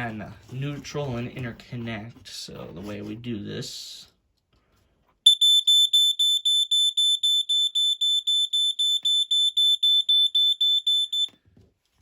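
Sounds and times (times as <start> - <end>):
smoke alarm rapid pulsing beep: 5.3 - 11.4.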